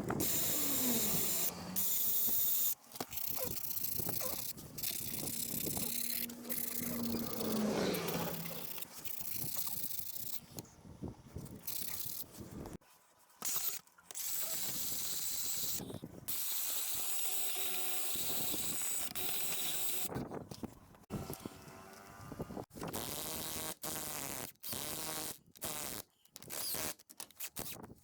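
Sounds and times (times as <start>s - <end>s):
ratchet wrench clicking: 0.2s - 7.5s.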